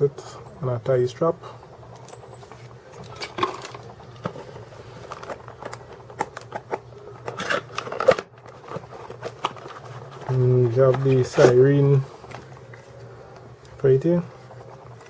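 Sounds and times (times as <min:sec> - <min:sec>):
plastic packets clicking and rustling: 0:03.0 - 0:15.0.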